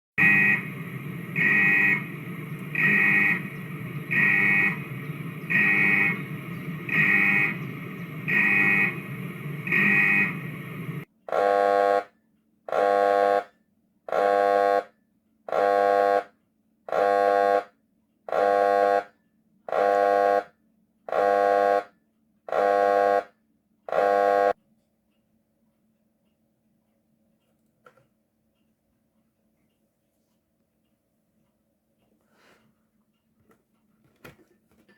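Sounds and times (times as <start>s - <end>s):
level-crossing warning tone: 0.2s - 11.1s
steady background noise: 0.2s - 11.1s.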